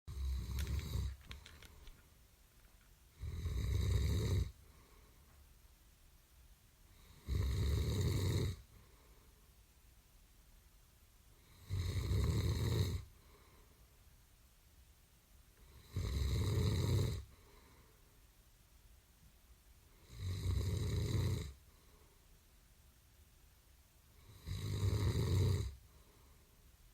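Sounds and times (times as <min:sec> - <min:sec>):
loud snoring: 0:00.1 - 0:01.2, 0:03.2 - 0:04.6, 0:07.0 - 0:08.6, 0:11.4 - 0:13.1, 0:15.7 - 0:17.3, 0:20.0 - 0:21.6, 0:24.2 - 0:25.8.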